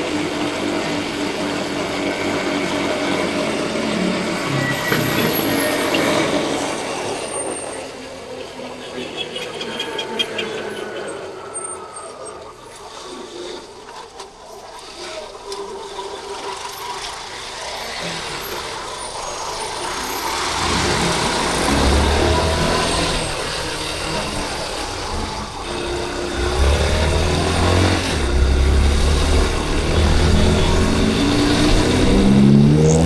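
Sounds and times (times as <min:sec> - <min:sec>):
city street traffic: 0:00.0 - 0:33.0
motorcycle engine: 0:16.4 - 0:33.0
deep rumble of heavy traffic: 0:17.3 - 0:33.0.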